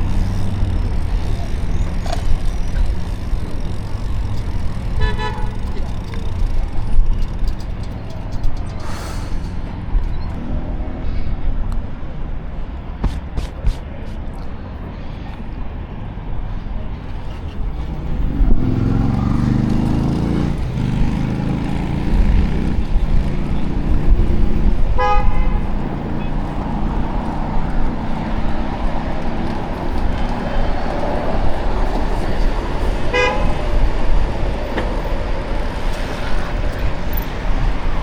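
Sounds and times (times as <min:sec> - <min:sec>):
traffic rumble: 0:00.0 - 0:38.0
vehicle horn toots: 0:04.8 - 0:06.0, 0:24.9 - 0:26.3, 0:33.1 - 0:33.6
vehicle engine passing: 0:17.0 - 0:24.9.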